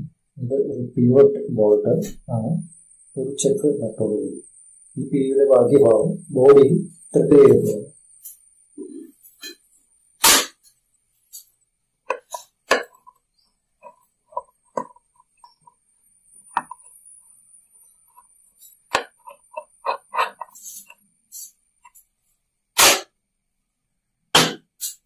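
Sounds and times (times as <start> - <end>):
sharp knock: 10.2 - 10.6, 22.8 - 23.1, 24.4 - 25.0.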